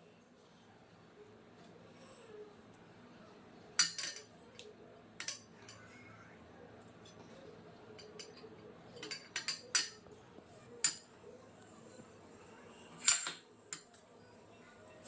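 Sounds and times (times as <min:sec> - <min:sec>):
utensils and dishes clinking: 0:03.8 - 0:04.4, 0:05.2 - 0:06.0, 0:07.0 - 0:11.2, 0:12.9 - 0:14.0.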